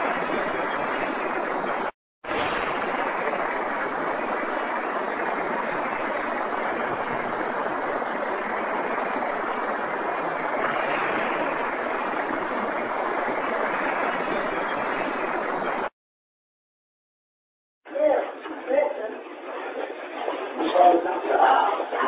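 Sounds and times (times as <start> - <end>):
recorder background hiss: 0.0 - 15.9.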